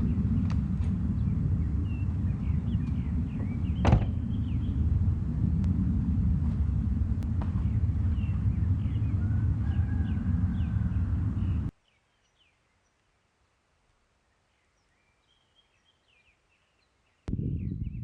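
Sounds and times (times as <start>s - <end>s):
birds chirping: 0.0s - 5.1s, 7.3s - 13.2s
loud low rumble: 0.0s - 11.7s, 17.3s - 18.0s.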